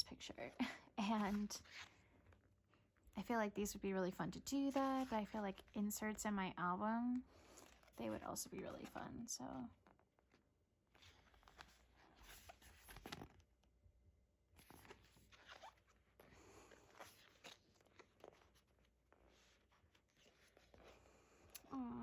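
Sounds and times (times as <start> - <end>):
photo book pages turning: 1.2 - 2.5, 7.3 - 9.2, 9.8 - 13.8, 14.5 - 21.7.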